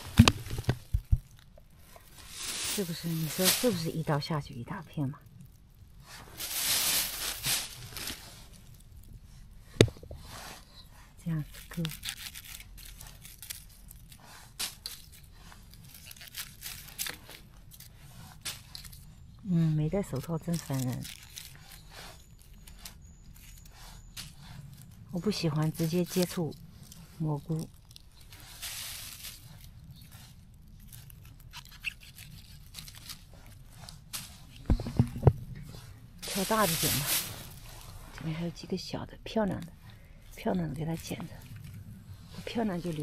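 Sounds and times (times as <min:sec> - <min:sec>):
mushrooms being cut: 0:00.0 - 0:01.2
stems tearing and crackling: 0:00.0 - 0:09.3, 0:11.2 - 0:34.7, 0:36.2 - 0:38.4, 0:39.5 - 0:43.0
stems snapping: 0:11.5 - 0:19.0.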